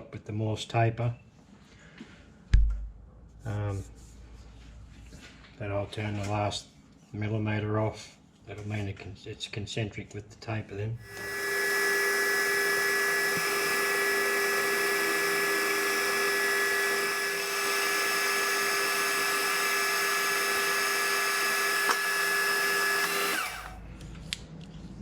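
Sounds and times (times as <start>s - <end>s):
metal lathe whine: 11.1s - 23.8s.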